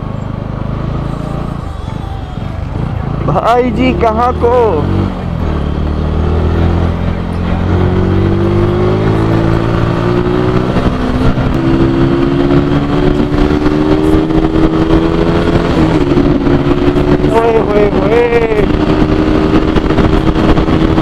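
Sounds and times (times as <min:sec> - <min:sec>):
motorcycle engine accelerating: 0:00.0 - 0:21.0.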